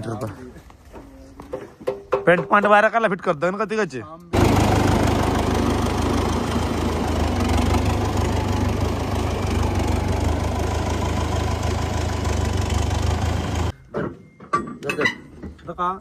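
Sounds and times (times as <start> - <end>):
tractor diesel engine running: 4.4 - 13.8.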